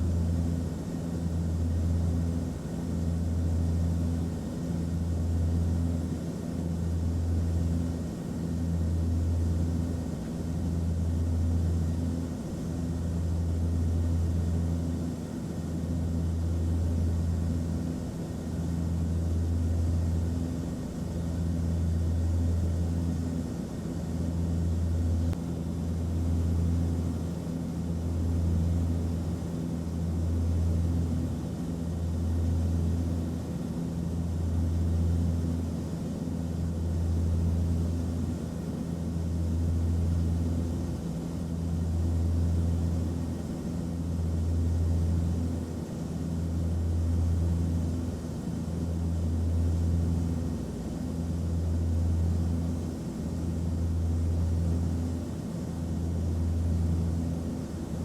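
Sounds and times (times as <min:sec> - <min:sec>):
airplane cabin drone: 0:00.0 - 0:58.0
faint hum tones: 0:00.0 - 0:58.0.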